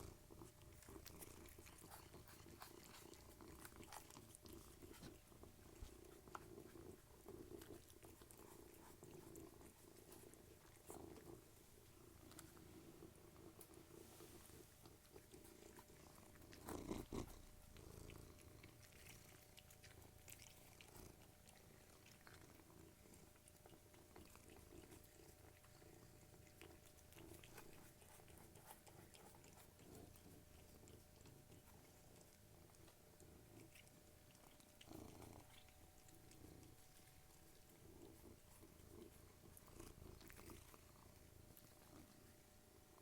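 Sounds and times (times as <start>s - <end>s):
cats crunching food: 0.0s - 43.0s
cats purring: 0.0s - 43.0s.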